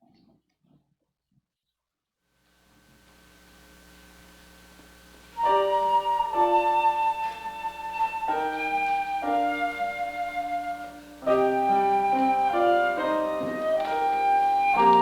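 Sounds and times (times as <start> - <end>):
piano: 5.3 - 15.0
flute: 5.4 - 15.0.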